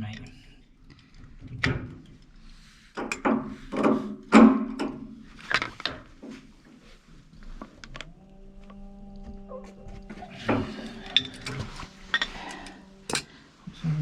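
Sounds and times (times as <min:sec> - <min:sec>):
pipe wrenches clunking on metal: 0:01.4 - 0:06.5, 0:09.9 - 0:13.3.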